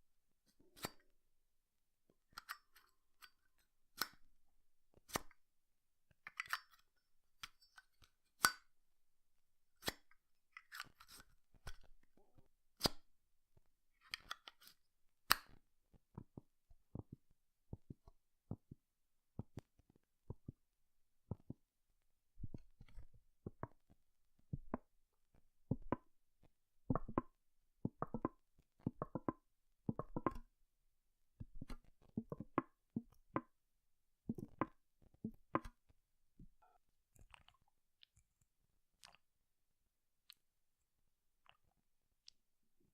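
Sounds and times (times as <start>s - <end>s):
lighter lid clicking open and shut: 12.8s - 13.0s.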